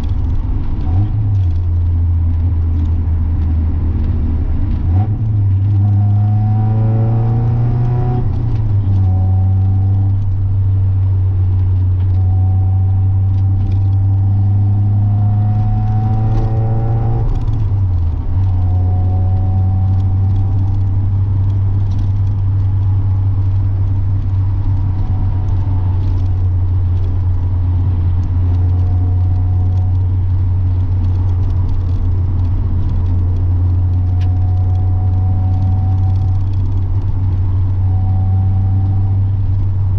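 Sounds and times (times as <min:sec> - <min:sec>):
car engine and exhaust droning: 0:00.0 - 0:39.9.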